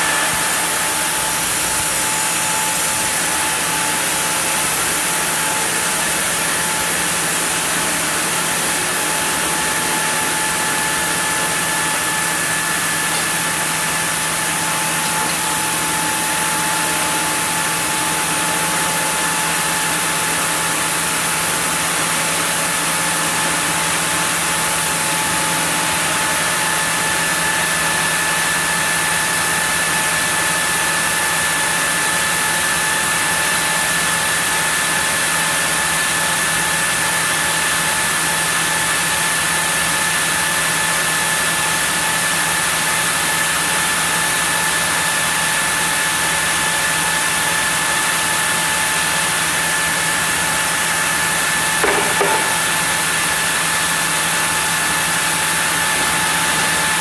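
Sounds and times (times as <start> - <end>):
high saw whine: 0.0 - 21.0
short knock: 51.8 - 52.8
saw machine hum: 51.8 - 53.1.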